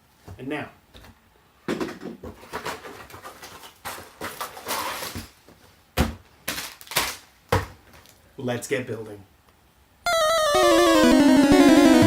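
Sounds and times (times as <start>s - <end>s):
packaging rustling: 6.4s - 7.3s.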